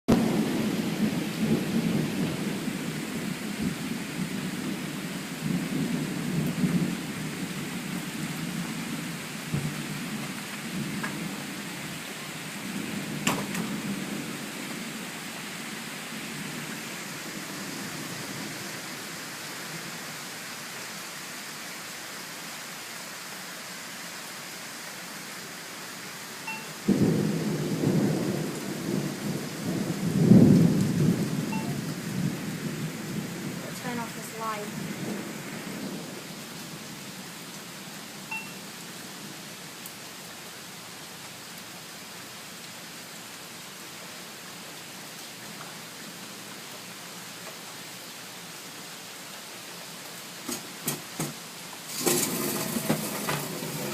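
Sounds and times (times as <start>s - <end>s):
loud thunderclap: 0.1s - 2.8s, 9.5s - 10.1s, 12.8s - 14.3s, 26.9s - 35.2s, 51.9s - 53.9s
thunder rumbling: 0.1s - 12.0s, 12.6s - 14.8s, 26.8s - 36.2s, 51.9s - 53.9s
steady rain: 0.1s - 53.9s.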